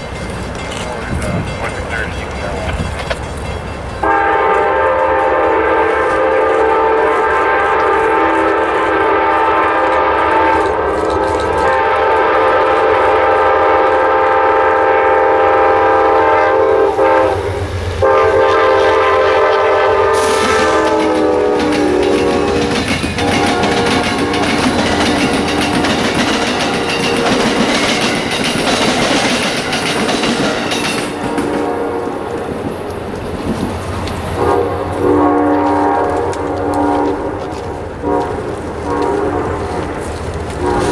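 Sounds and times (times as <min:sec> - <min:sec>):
train wheels clattering on rails: 0:00.0 - 0:14.4, 0:17.0 - 0:40.9
train air horn: 0:04.0 - 0:24.8, 0:31.1 - 0:32.4, 0:34.3 - 0:40.0, 0:40.6 - 0:40.9.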